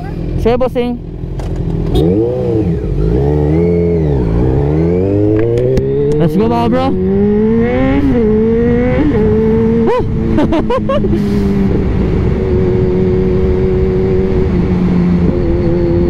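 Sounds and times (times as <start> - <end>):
engine revving: 0.0 - 16.0
motorcycle engine cruising: 0.0 - 16.0
wind rumble: 1.1 - 16.0.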